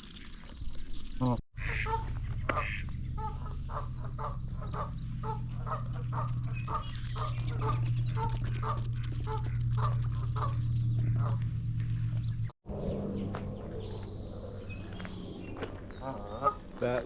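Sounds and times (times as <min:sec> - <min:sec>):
ducks or geese clucking: 0:01.6 - 0:11.4
steady low hum: 0:01.6 - 0:16.9.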